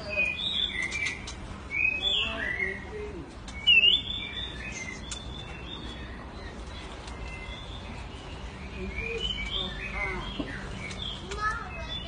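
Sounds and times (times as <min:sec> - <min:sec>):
bird singing whistled phrases: 0:00.0 - 0:02.9, 0:03.6 - 0:05.9.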